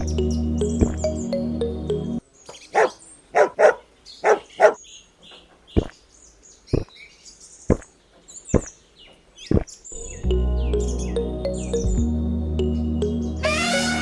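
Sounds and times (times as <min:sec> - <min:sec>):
faint birds chirping: 0:00.0 - 0:12.0
dog barking: 0:02.8 - 0:04.8.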